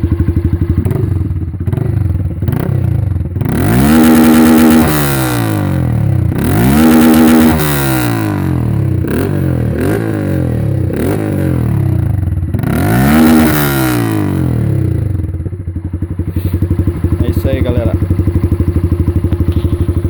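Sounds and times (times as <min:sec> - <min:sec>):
motorcycle engine revving: 0:00.0 - 0:20.0.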